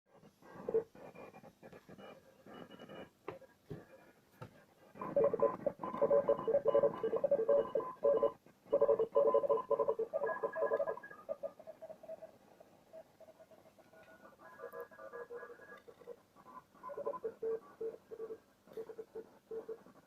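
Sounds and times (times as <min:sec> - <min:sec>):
faint radio tones: 0:00.1 - 0:20.0
radio static: 0:04.9 - 0:12.4, 0:13.4 - 0:20.0
rapidly switching beeping tones: 0:05.0 - 0:20.0.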